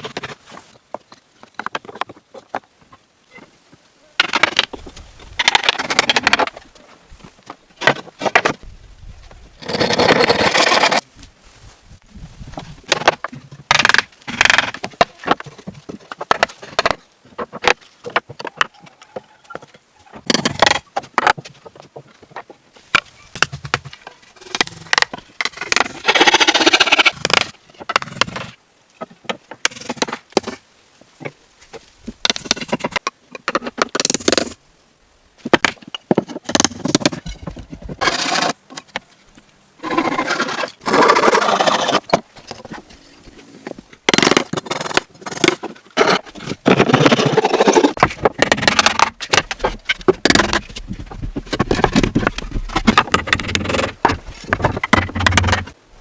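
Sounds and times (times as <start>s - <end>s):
scraping and knocking on wood: 12.5s - 30.6s, 31.2s - 34.6s, 35.4s - 55.8s.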